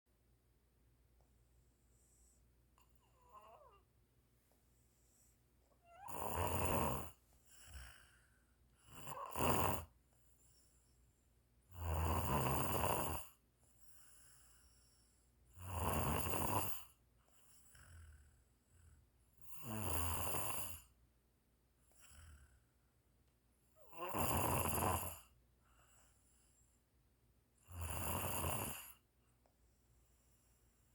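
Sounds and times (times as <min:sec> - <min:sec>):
soft breath sounds: 0:01.2 - 0:06.1, 0:07.0 - 0:09.2, 0:09.9 - 0:11.6, 0:13.5 - 0:15.5, 0:25.2 - 0:27.0, 0:28.7 - 0:30.9
person snoring: 0:05.9 - 0:08.2, 0:08.9 - 0:09.9, 0:11.7 - 0:13.4, 0:15.6 - 0:16.9, 0:19.4 - 0:20.9, 0:23.8 - 0:25.3, 0:27.7 - 0:29.0.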